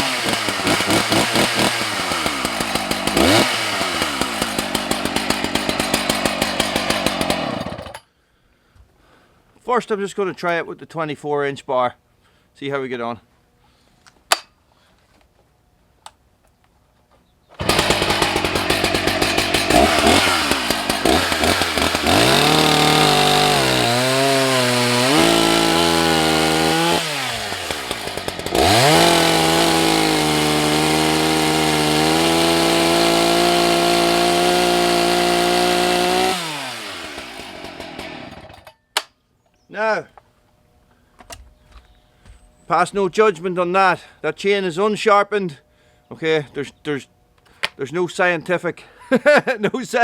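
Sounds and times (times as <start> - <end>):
chainsaw running at high revs: 0.0 - 8.0, 17.6 - 38.7.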